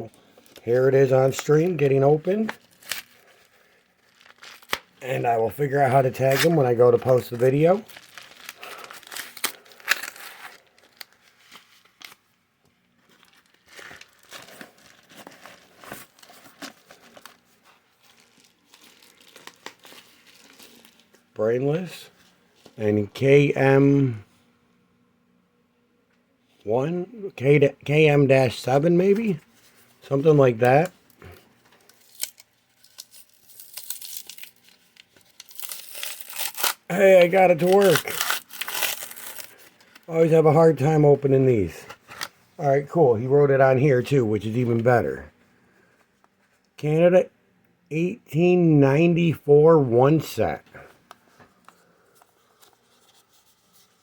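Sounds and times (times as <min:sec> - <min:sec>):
packaging crinkling and tearing: 0:00.2 - 0:12.3, 0:13.0 - 0:21.2, 0:30.5 - 0:40.1.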